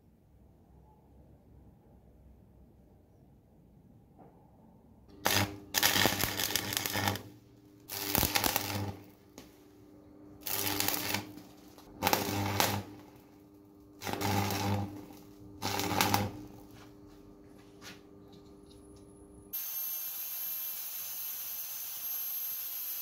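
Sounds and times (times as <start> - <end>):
power tool working on metal: 5.1 - 7.3, 7.9 - 9.1, 10.4 - 13.2, 14.0 - 16.5, 19.6 - 23.0.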